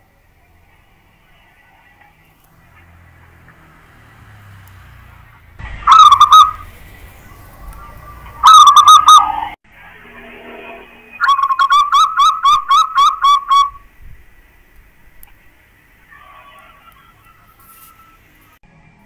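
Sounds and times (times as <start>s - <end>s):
dove cooing: 5.9s - 6.7s, 7.3s - 9.4s, 11.2s - 13.8s.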